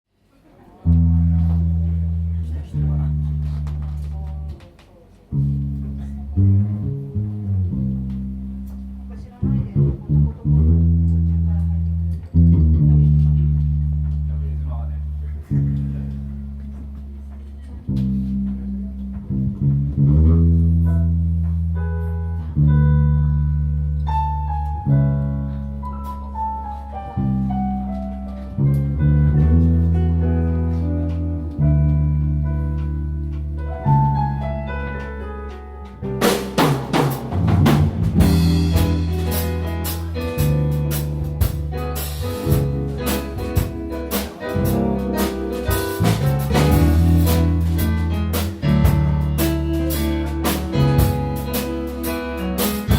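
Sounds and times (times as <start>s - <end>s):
guitar and bass instrumental music: 0.8s - 4.5s, 5.3s - 52.9s
drum kit beat: 32.0s - 52.9s.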